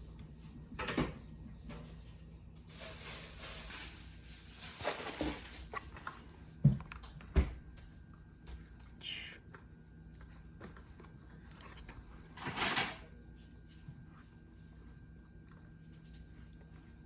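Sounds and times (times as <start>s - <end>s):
paper rustling: 2.7s - 6.4s.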